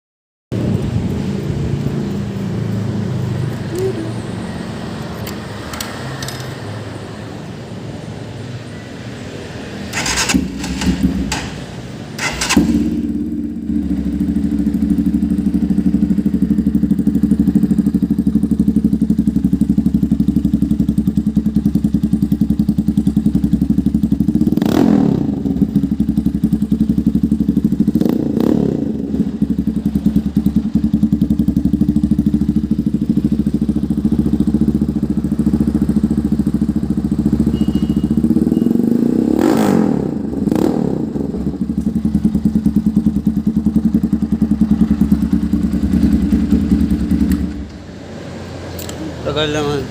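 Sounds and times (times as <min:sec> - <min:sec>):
motorcycle engine idling: 0:09.9 - 0:39.4, 0:40.2 - 0:49.9
motorcycle throttle blips: 0:09.9 - 0:47.9.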